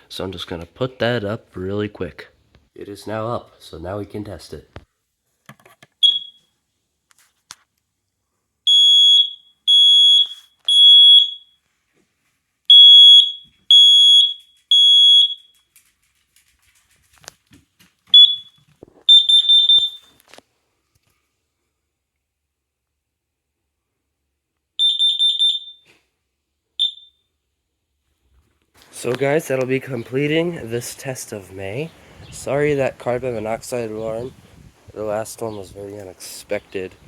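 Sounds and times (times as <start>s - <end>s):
smoke alarm beeping: 6.0s - 6.5s, 8.7s - 11.6s, 12.7s - 15.7s, 18.1s - 20.2s, 24.8s - 25.9s, 26.8s - 27.3s
smoke alarm chirp: 6.0s - 6.5s, 8.7s - 11.6s, 12.7s - 15.6s, 18.1s - 20.2s, 24.8s - 25.9s, 26.8s - 27.4s.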